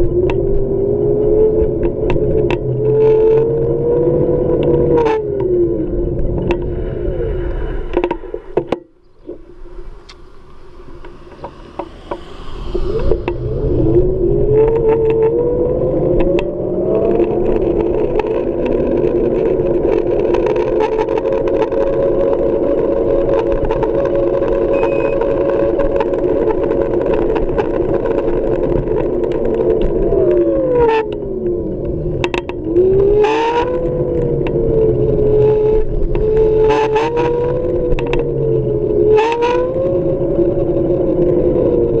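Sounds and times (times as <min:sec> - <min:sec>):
sharp clicks or knocks: 0:07.9 - 0:15.3
electric scooter motor whining: 0:09.0 - 0:42.0.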